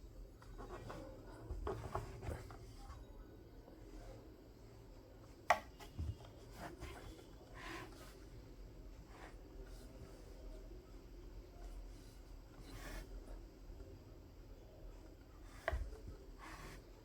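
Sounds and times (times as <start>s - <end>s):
soft scrape: 11.9s - 13.3s.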